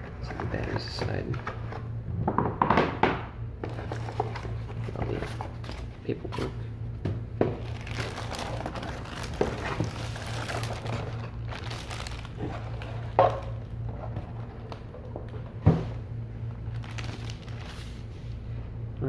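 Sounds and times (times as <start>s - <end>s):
plastic and paper rustling: 0.0s - 1.8s, 3.6s - 6.6s, 7.5s - 16.0s, 16.6s - 18.4s
steady low hum: 0.0s - 19.0s.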